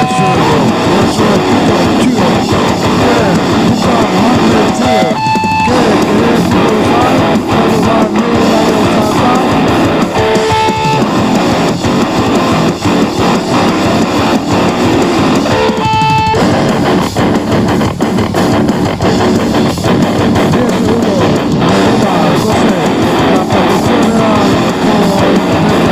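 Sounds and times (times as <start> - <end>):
heavy metal music: 0.0 - 25.9.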